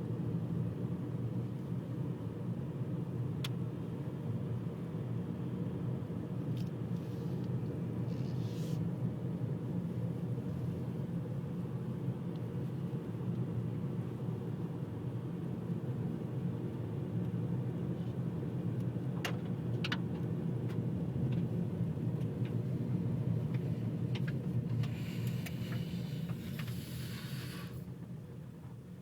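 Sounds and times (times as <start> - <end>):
car cabin engine rumble: 17.1 - 29.0
brief high hiss: 24.9 - 27.8.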